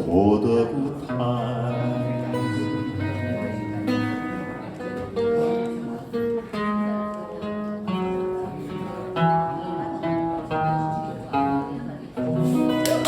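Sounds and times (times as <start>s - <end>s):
acoustic guitar notes plucked: 0.0s - 13.0s.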